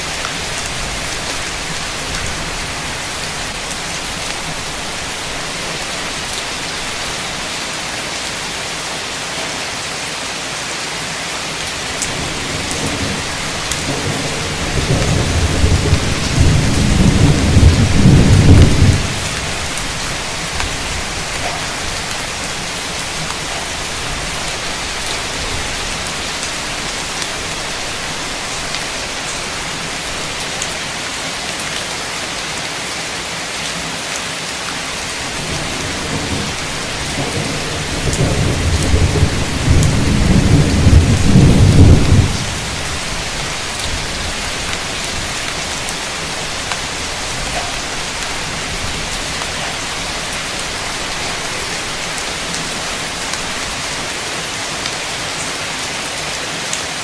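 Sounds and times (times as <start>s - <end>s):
heavy rain hissing: 0.0s - 57.0s
thunder rolling: 12.1s - 20.0s, 35.3s - 43.4s.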